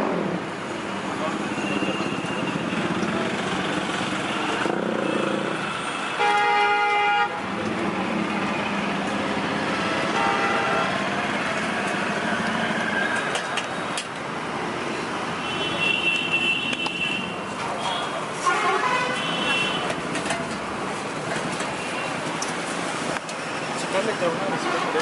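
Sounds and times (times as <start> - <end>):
roadside traffic: 0.0 - 25.0
vehicle horn: 6.2 - 7.4, 18.4 - 19.8.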